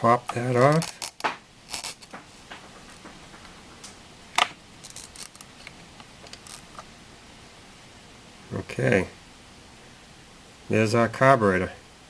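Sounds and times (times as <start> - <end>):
tools handled on a bench: 0.0 - 3.6.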